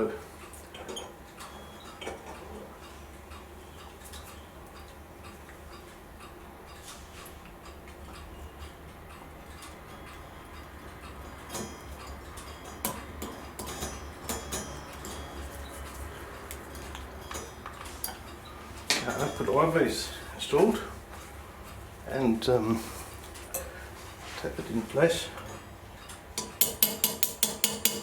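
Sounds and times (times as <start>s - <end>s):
metallic clicks of clock parts: 0.4s - 15.8s.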